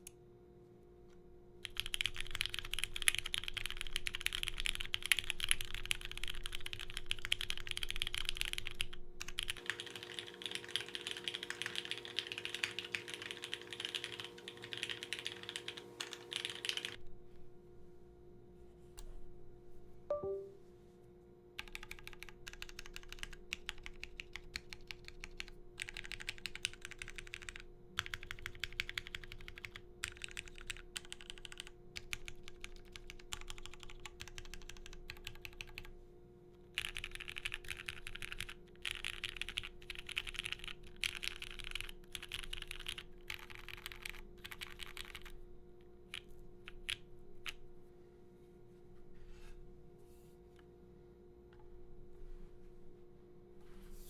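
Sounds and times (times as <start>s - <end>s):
faint steady hum: 0.0s - 54.0s
mechanical keyboard typing: 1.6s - 17.0s, 21.6s - 35.9s, 36.8s - 45.4s, 46.1s - 47.6s.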